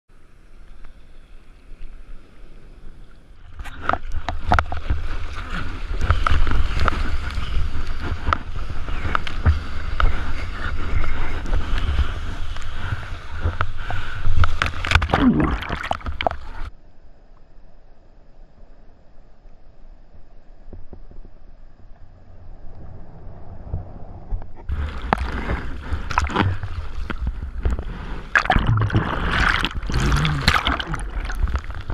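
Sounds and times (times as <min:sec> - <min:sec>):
water splashing and sloshing: 0:03.4 - 0:16.7, 0:21.8 - 0:31.9
heavy rumble: 0:20.8 - 0:31.9.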